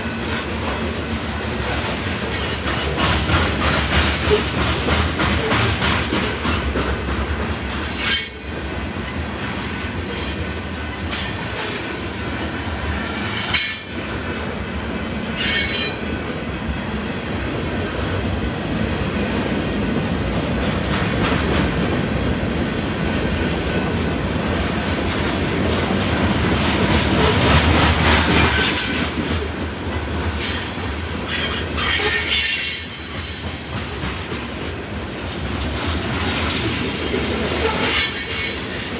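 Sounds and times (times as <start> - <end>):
train wheels rumbling on rails: 0.0 - 38.9
high-pitched wheel squeals: 15.4 - 16.2, 30.4 - 33.2, 37.6 - 38.9.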